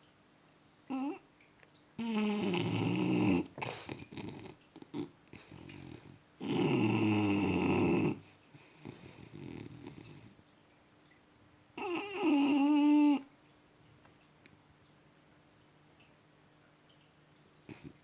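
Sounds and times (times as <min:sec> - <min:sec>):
loud snoring: 0:02.0 - 0:08.2, 0:08.8 - 0:10.3, 0:11.8 - 0:13.2.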